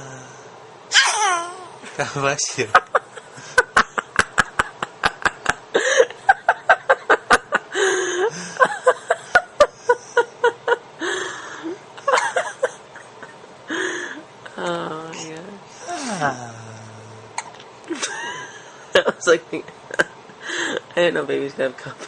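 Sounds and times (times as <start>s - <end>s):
person laughing: 12.0s - 13.4s.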